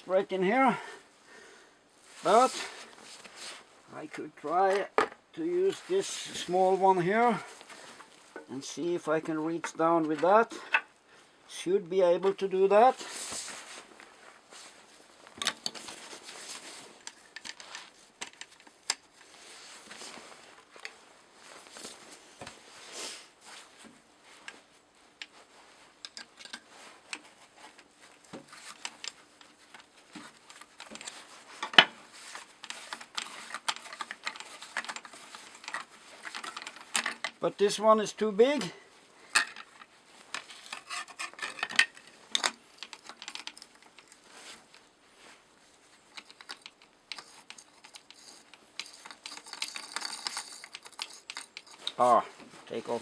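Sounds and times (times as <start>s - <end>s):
hand tools clicking and clinking: 28.5s - 37.4s, 39.3s - 44.2s, 46.0s - 52.1s
metal tool scraping on wood stove: 40.5s - 42.2s.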